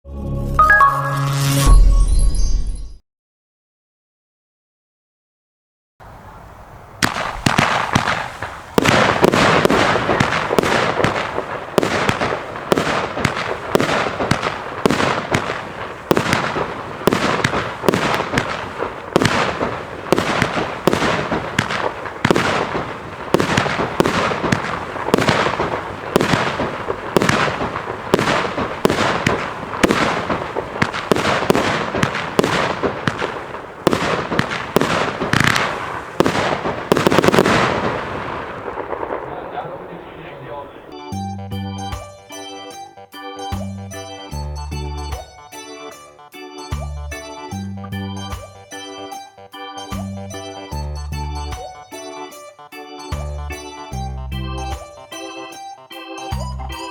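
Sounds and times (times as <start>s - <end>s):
firework cake shots: 7.0s - 40.7s.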